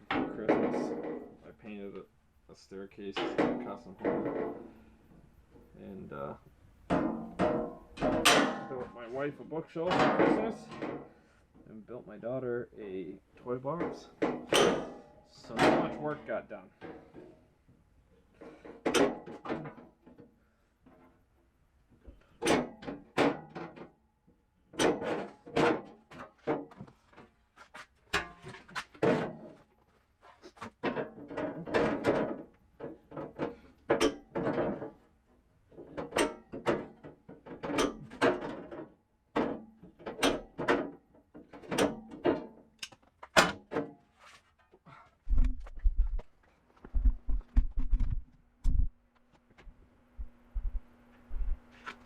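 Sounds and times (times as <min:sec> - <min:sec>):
knocks and clunks with rattle: 0:00.0 - 0:02.1, 0:03.0 - 0:09.1, 0:09.8 - 0:11.1, 0:13.7 - 0:17.4, 0:18.3 - 0:20.3, 0:22.0 - 0:23.9, 0:24.7 - 0:27.4, 0:28.1 - 0:29.7, 0:30.3 - 0:44.0, 0:44.6 - 0:48.9.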